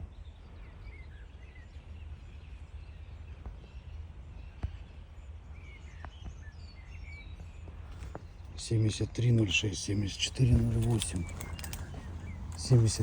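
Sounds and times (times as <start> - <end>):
steady low rumble: 7.8 - 13.0
soft clicks: 10.8 - 13.0.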